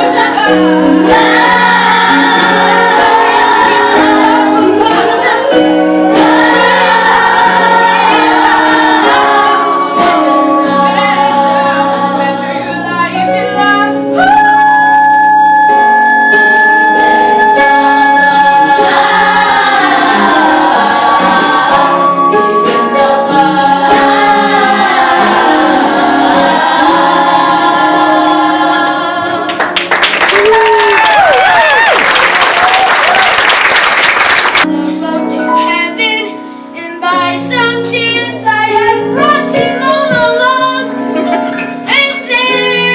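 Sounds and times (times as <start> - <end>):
children singing: 0.0 - 13.3, 15.7 - 29.8
musical accompaniment: 0.0 - 42.9.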